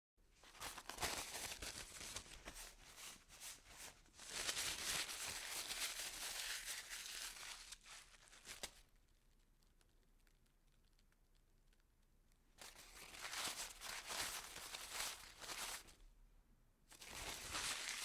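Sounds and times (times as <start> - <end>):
paper crumpling: 0.4 - 8.8, 12.6 - 16.0, 16.9 - 18.0.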